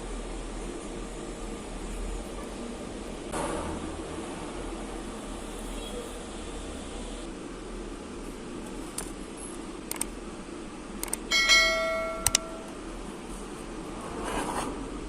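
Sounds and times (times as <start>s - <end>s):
light metallic clicks: 9.9s - 10.1s, 11.0s - 11.3s
metal struck and ringing: 11.3s - 12.9s.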